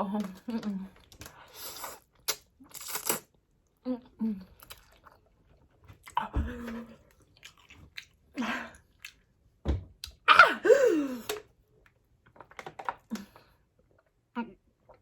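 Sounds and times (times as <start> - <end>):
person chewing noodles: 1.0 - 3.8, 4.4 - 6.2, 6.9 - 9.3.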